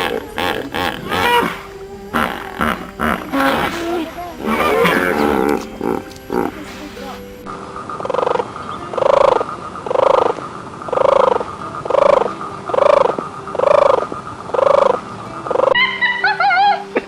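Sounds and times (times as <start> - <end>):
wavering whistle-like call: 0.0 - 10.3
animal calling: 0.0 - 17.0.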